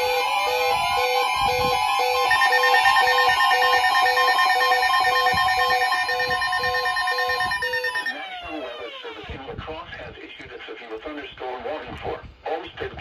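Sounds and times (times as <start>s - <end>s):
two-tone alert signal: 0.0s - 8.4s
higher pulsing tone: 0.1s - 8.4s
low beeps: 0.2s - 8.5s.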